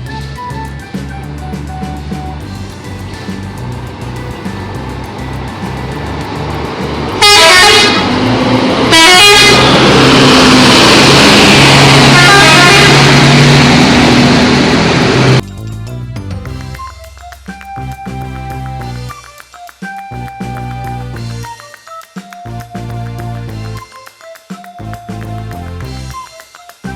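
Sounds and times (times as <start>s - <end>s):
music with drum beat: 0.0s - 9.0s, 15.4s - 26.9s
loud sustained sound: 2.1s - 15.4s
musical bus horn: 6.8s - 15.4s.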